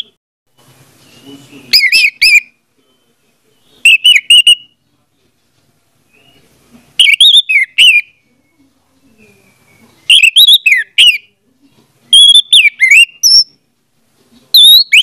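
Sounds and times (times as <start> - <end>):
thrush whistling song: 0.0 - 4.8, 6.0 - 8.6, 9.2 - 11.3, 12.1 - 13.6, 14.5 - 15.0.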